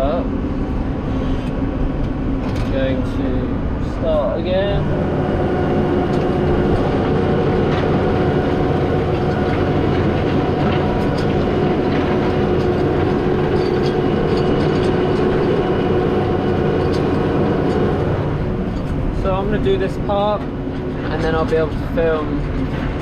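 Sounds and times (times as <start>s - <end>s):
tractor engine running: 1.9s - 23.0s
light rattles: 5.0s - 23.0s.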